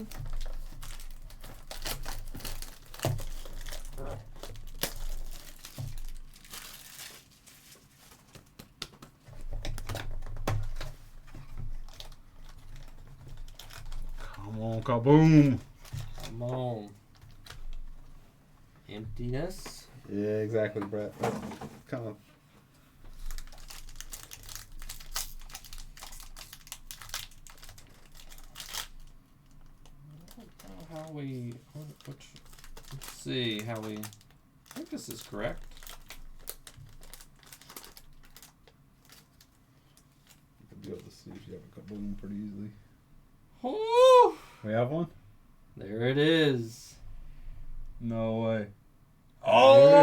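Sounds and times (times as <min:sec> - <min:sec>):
wrappers crinkling: 0:00.0 - 0:18.2, 0:23.1 - 0:42.0
cards clicking and tapping: 0:08.1 - 0:11.4.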